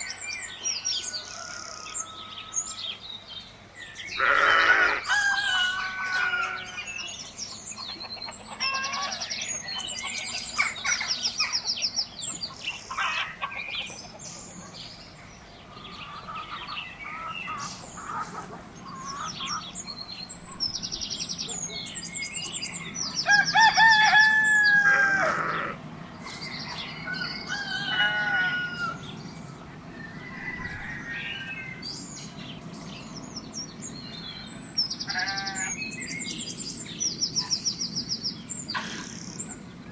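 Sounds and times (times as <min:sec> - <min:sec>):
small birds chirping: 0:00.0 - 0:28.1, 0:28.8 - 0:39.9
rooster crowing: 0:00.8 - 0:03.0, 0:04.2 - 0:07.0, 0:23.2 - 0:25.8, 0:27.0 - 0:29.1, 0:29.9 - 0:31.9
chickens clucking: 0:07.4 - 0:21.8.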